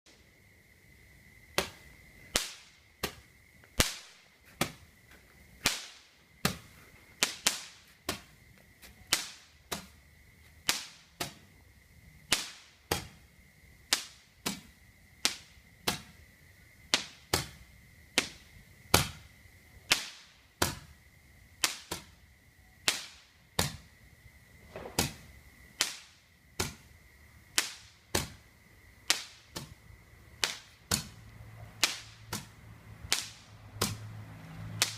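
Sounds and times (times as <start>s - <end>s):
fireworks bangs: 1.5s - 8.4s, 9.1s - 10.0s, 10.6s - 11.5s, 12.2s - 13.2s, 24.5s - 34.1s
faint steady high tone: 22.1s - 22.9s.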